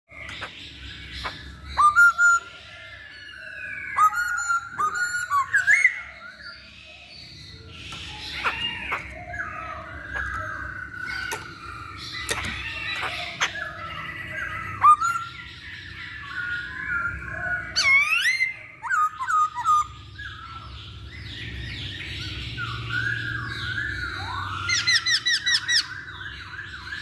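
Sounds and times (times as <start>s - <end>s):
harsh rapid bird chattering: 0.1s - 2.5s, 7.9s - 17.2s
bird whistled phrases: 1.2s - 2.6s, 3.4s - 6.7s, 16.2s - 20.5s.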